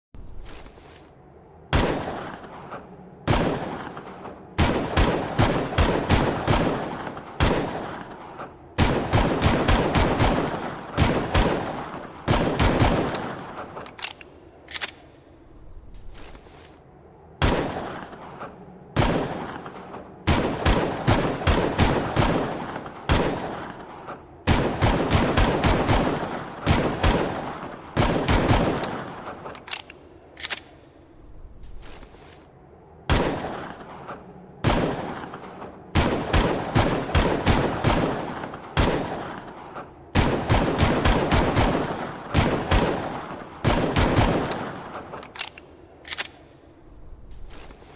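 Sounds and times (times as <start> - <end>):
pistol shots with echo: 1.7 - 13.9, 33.1 - 45.5.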